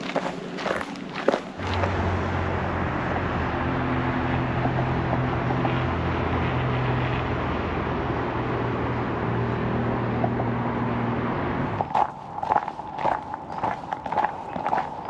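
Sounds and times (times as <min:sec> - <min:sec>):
footsteps: 0:00.0 - 0:01.9, 0:11.8 - 0:15.0
vehicle engine running: 0:00.0 - 0:06.6, 0:08.9 - 0:15.0
road noise: 0:00.0 - 0:15.0.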